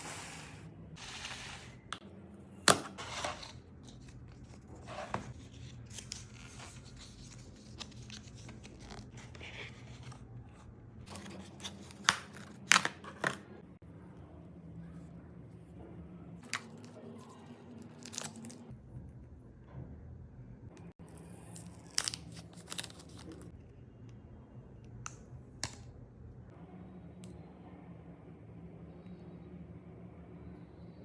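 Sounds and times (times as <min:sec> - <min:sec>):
packaging rustling and tearing: 0:21.5 - 0:23.5.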